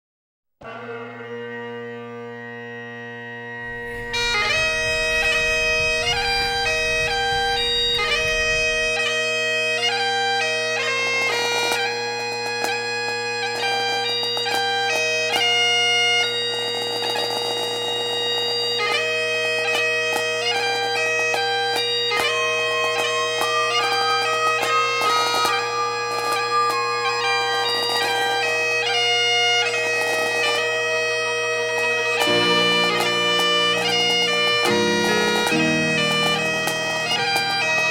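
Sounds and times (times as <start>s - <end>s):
quick melody over drone: 3.5s - 9.0s, 32.3s - 37.9s.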